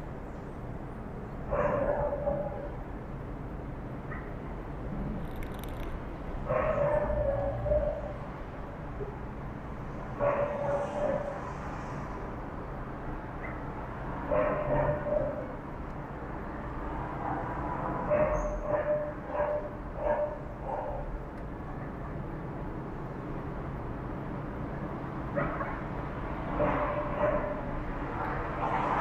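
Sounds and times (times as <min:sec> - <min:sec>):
dogs barking and yelping: 0:01.5 - 0:02.8, 0:06.5 - 0:08.2, 0:10.2 - 0:11.5, 0:14.3 - 0:15.6, 0:18.0 - 0:21.2, 0:26.5 - 0:27.8.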